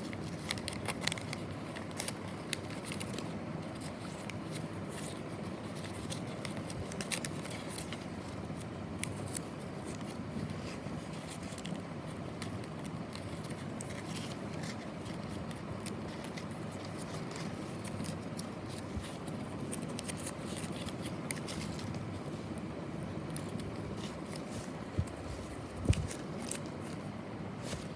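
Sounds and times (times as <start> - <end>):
packaging scraping and clicking: 0.0 - 22.3.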